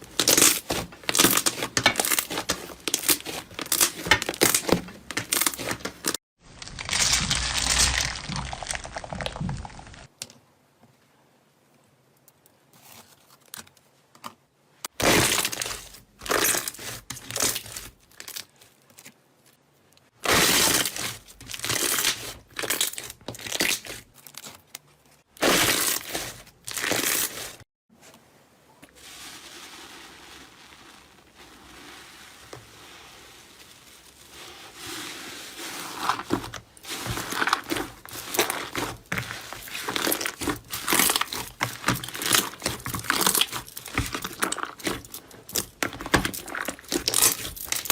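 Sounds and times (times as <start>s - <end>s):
slime squeezed and crackling: 0.1s - 10.1s, 20.2s - 24.6s, 35.8s - 47.9s.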